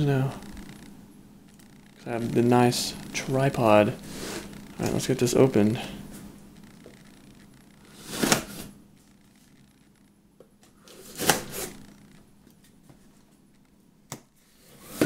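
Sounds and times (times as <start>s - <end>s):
knife slitting packing tape: 10.9s - 11.8s.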